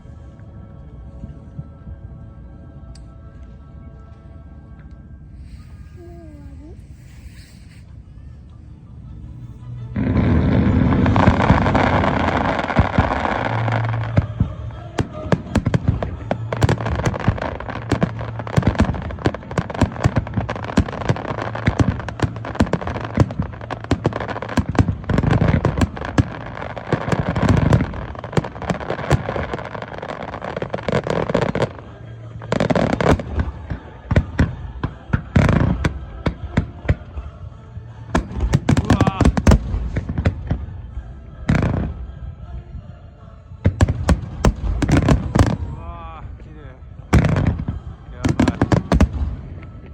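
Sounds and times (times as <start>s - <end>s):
fireworks bangs and crackling: 9.9s - 37.4s, 38.0s - 40.7s, 41.4s - 42.2s, 43.6s - 46.1s, 47.1s - 49.9s.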